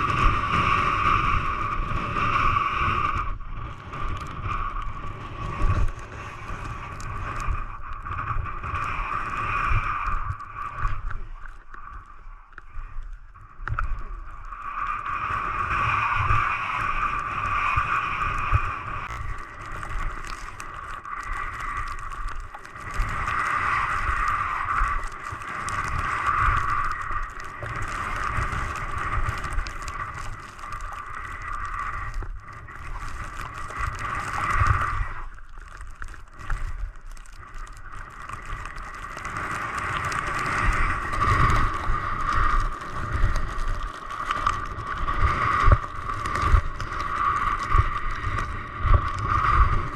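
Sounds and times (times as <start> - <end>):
wind buffeting microphone: 0.0 - 11.1, 13.2 - 35.3
skis running through wet snow: 14.6 - 49.9.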